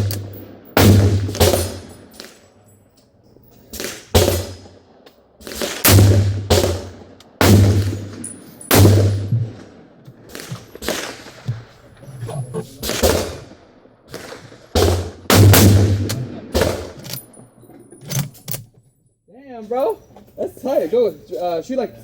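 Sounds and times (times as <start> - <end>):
rifle shots echoing: 0.0 - 2.7, 3.6 - 17.6.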